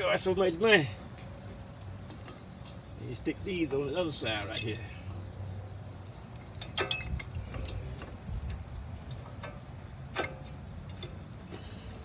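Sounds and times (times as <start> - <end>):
metallic clicks of brake hardware: 4.4 - 12.0.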